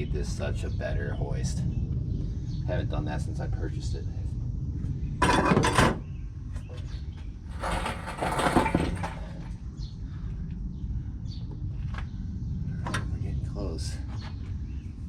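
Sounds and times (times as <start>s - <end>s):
steady low rumble: 0.0s - 15.0s
metal clattering and rattling: 7.5s - 9.6s.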